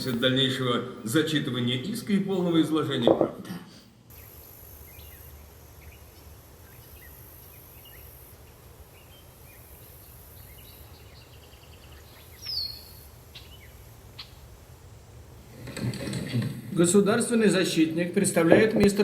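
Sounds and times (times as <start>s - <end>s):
small birds chirping: 4.1s - 14.7s.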